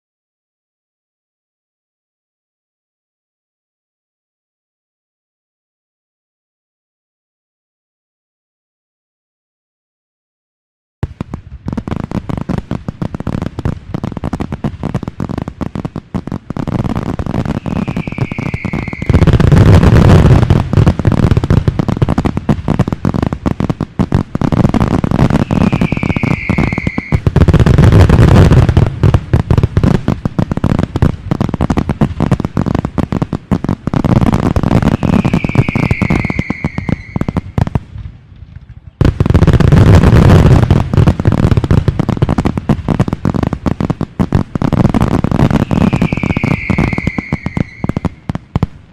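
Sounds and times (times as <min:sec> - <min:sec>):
fireworks crackling: 0:11.0 - 0:48.9
falling whistle: 0:17.6 - 0:19.3, 0:25.4 - 0:27.2, 0:34.9 - 0:37.4, 0:45.6 - 0:48.1.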